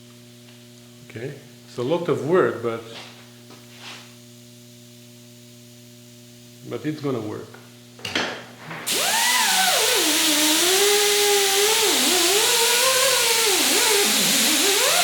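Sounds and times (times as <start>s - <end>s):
polishing wheel scouring metal: 8.9s - 15.0s
power drill motor whine: 8.9s - 15.0s.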